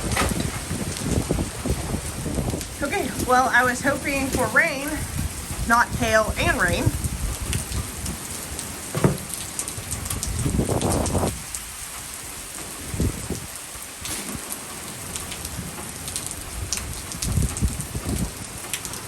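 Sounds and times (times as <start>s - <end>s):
heavy rain: 0.0s - 19.0s
hailstones ticking: 13.5s - 19.0s.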